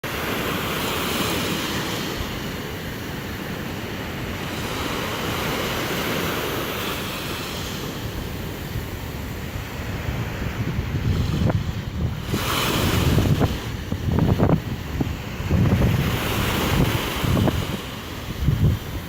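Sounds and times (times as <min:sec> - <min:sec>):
sea surf washing onto beach: 0:00.0 - 0:19.0
wind buffeting microphone: 0:08.0 - 0:19.0.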